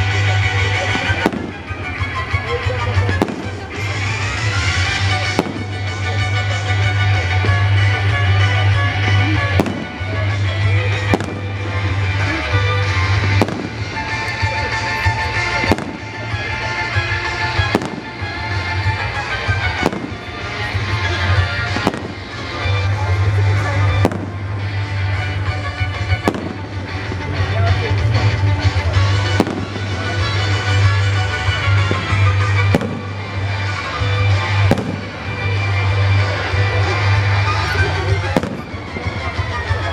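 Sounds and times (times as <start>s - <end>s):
fireworks bursting with sharp bangs: 0.0s - 39.9s
music playing: 0.0s - 39.9s.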